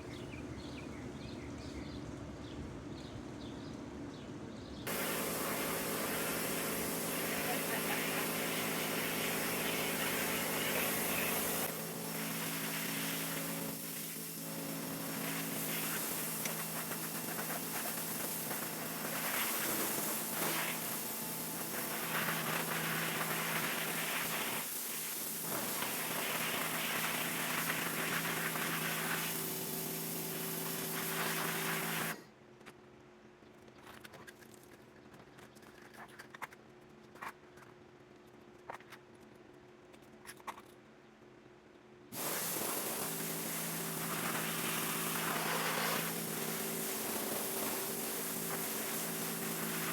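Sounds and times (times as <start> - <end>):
pressure washer pump hum: 4.9 - 32.2, 42.2 - 49.9
water spray hitting plastic blinds: 4.9 - 32.2, 42.2 - 49.9.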